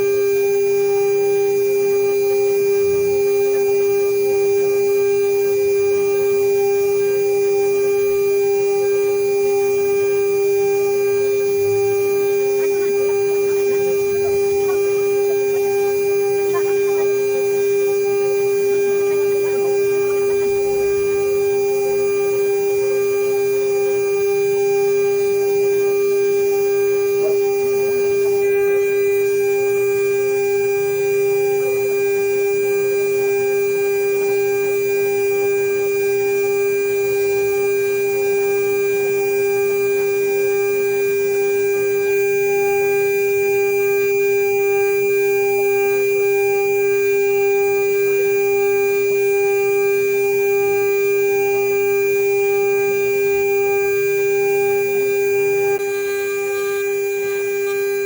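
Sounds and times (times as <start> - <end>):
router spindle high whine: 0.0 - 58.0.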